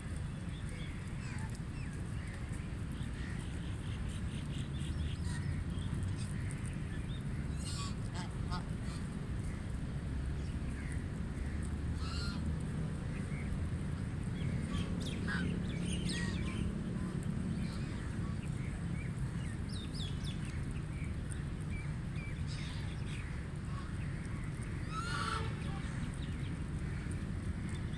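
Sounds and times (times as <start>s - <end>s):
low background rumble: 0.0s - 27.9s
ducks quacking: 7.6s - 9.0s, 12.0s - 12.5s, 24.9s - 26.0s.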